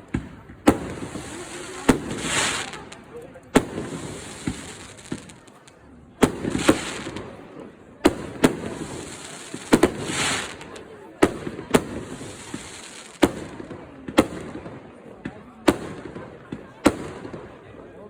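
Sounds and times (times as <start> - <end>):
firework hissing: 0.7 - 5.6, 6.3 - 7.2, 8.2 - 10.9, 11.8 - 13.3.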